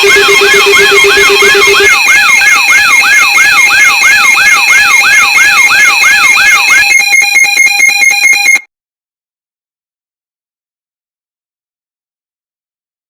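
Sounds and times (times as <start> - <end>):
fast pulsing beep: 0.0 - 6.1
electronic beeping tones: 0.0 - 6.2
whooping siren: 0.0 - 8.7.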